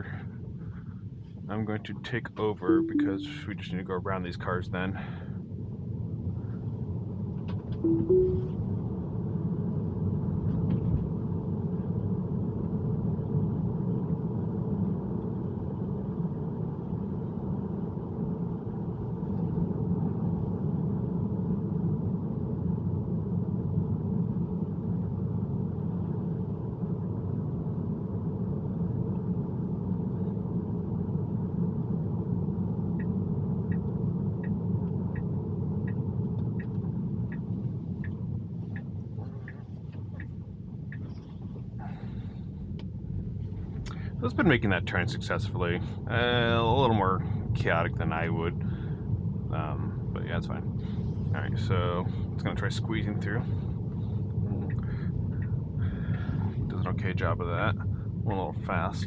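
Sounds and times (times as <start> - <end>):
road and tyre noise: 9.3 - 46.1
turn signal ticking: 33.0 - 41.2, 54.6 - 55.6.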